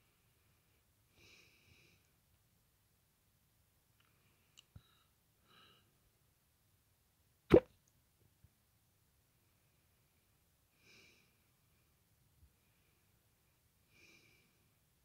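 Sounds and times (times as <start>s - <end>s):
faint breathing: 0.0s - 2.2s, 4.0s - 6.0s, 9.5s - 14.8s.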